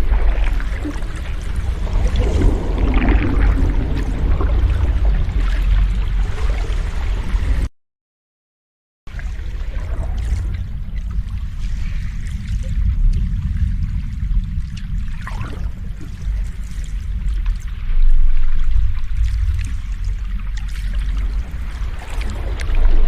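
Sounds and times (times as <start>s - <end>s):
sea waves washing in: 0.0s - 7.7s.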